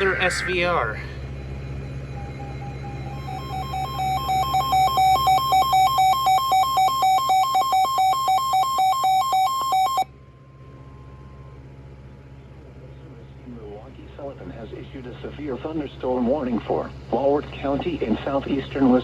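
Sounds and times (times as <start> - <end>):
faint steady tone: 0.0 - 19.0
two-tone electronic beeping alarm: 1.5 - 10.1.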